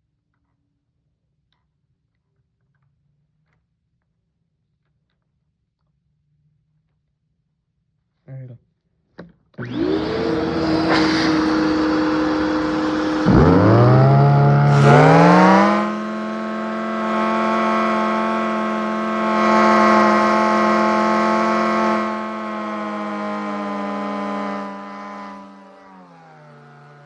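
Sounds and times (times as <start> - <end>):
lower whine spinning up: 9.6 - 27.0
turbine whine: 9.6 - 27.0.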